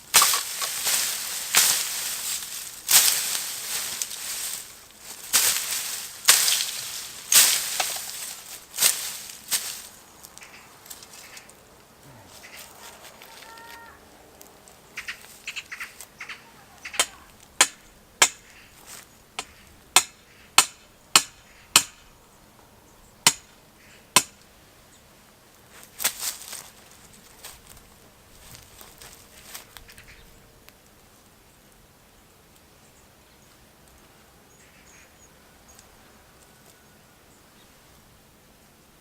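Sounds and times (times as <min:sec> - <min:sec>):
hammer striking a stake: 0:00.1 - 0:00.9, 0:16.9 - 0:18.5, 0:19.4 - 0:22.1, 0:23.3 - 0:23.6, 0:24.2 - 0:24.4.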